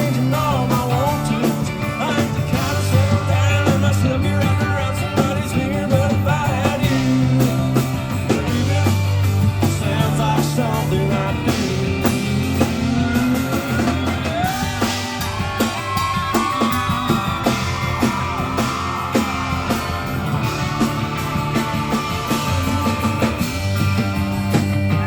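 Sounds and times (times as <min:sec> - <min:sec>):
live country band playing: 0:00.0 - 0:25.0
lead electric guitar bending notes: 0:16.8 - 0:25.0.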